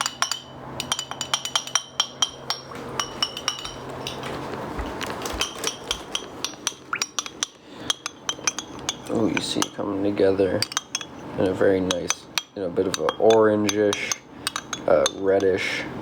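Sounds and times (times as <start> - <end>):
utensil clinking against bowl: 0.0 - 16.0
utensil scraping bowl: 5.4 - 15.7.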